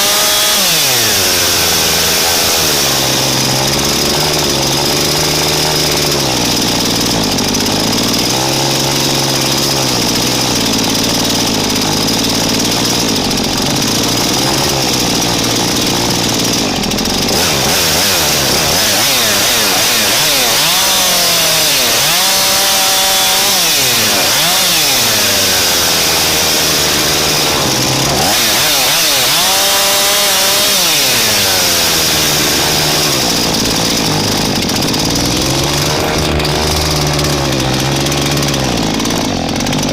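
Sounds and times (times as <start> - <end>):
chainsaw engine revving: 0.0 - 39.9.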